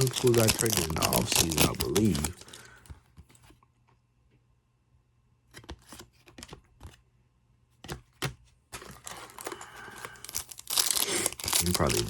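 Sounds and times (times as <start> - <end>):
wrapper crinkling: 0.0 - 2.8, 8.8 - 12.0.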